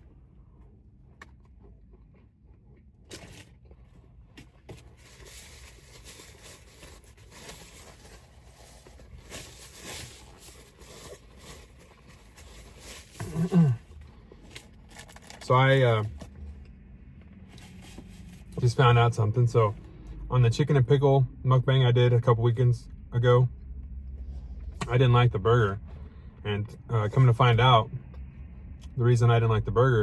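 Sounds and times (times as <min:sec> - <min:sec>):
crackly bites and chewing: 0:00.0 - 0:17.8.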